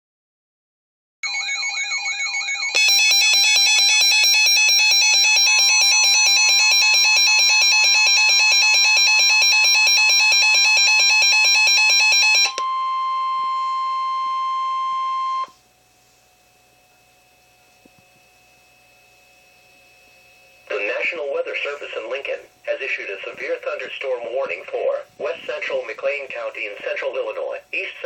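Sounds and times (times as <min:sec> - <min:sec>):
electronic warbling alarm: 0:01.2 - 0:15.6
steady warning tone: 0:01.2 - 0:15.6.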